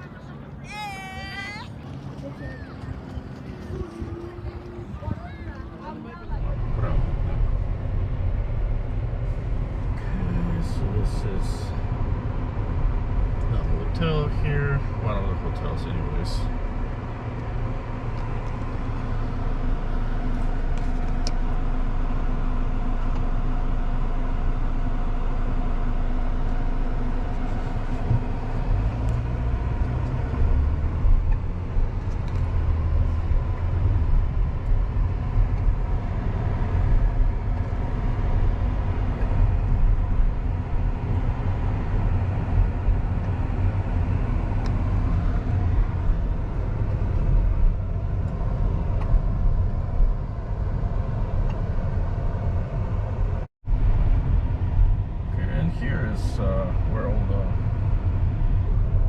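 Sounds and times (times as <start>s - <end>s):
car engine hum: 0.0s - 59.0s.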